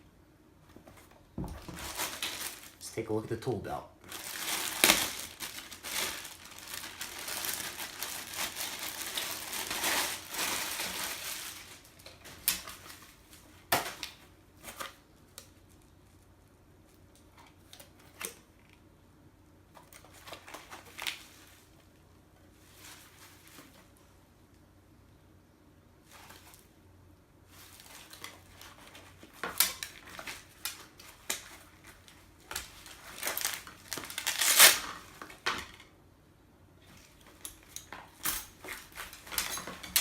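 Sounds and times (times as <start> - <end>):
padded belt rustling and crinkling: 0.7 - 2.8, 4.0 - 14.0, 22.5 - 24.1, 27.4 - 35.5, 36.8 - 40.0.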